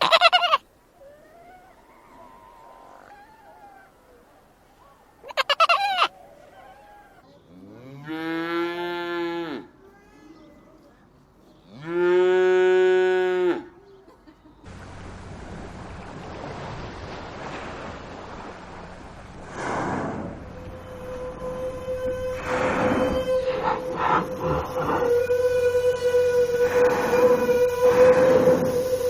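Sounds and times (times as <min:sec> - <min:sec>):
background hiss: 0:17.4 - 0:29.0
cattle mooing: 0:20.5 - 0:29.0.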